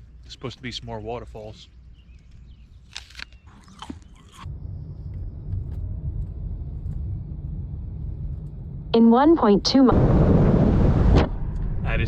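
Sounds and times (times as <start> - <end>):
crunchy chewing of food: 2.2 - 7.0
car rumbling on road: 4.5 - 12.0.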